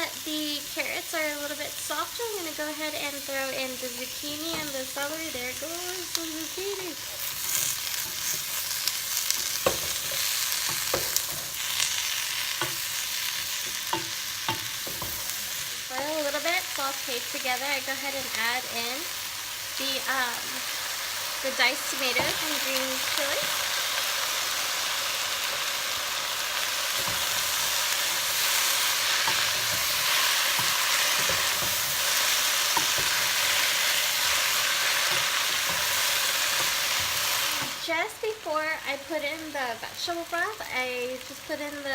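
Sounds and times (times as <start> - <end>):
vegetables sizzling in oil: 0.0 - 41.9
spoon stirring in a pot: 7.0 - 15.6, 26.6 - 37.8.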